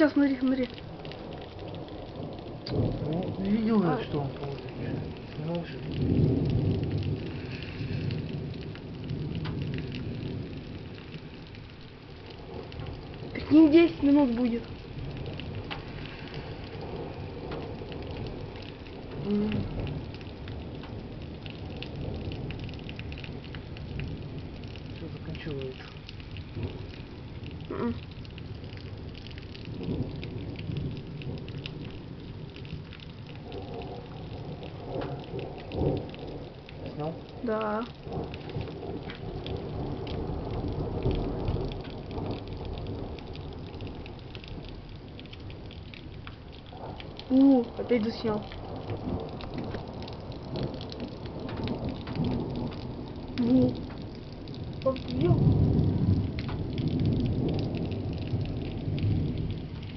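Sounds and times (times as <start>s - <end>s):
low rumble of thunder: 0.0s - 59.9s
rain falling: 0.0s - 59.9s
raindrops ticking on hard surface: 0.0s - 59.9s.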